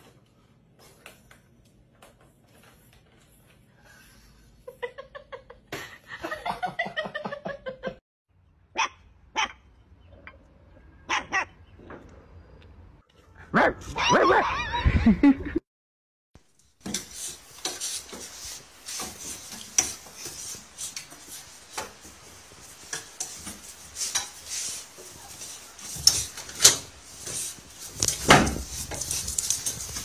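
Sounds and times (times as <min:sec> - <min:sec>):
dogs barking: 0:08.8 - 0:09.6, 0:11.0 - 0:11.6, 0:13.5 - 0:14.6.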